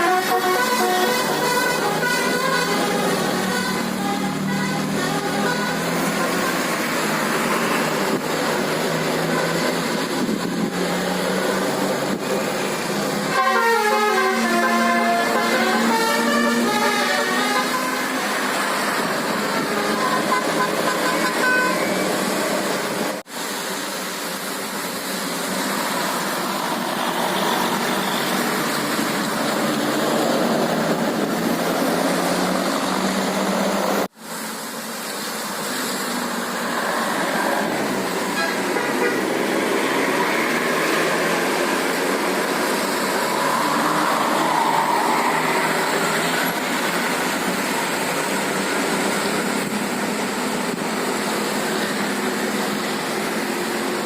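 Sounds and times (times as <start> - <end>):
musical bus horns: 0.0 - 7.3, 9.2 - 10.8, 13.0 - 22.3, 38.2 - 39.6
bus engines: 0.0 - 54.0
road noise: 0.0 - 54.0.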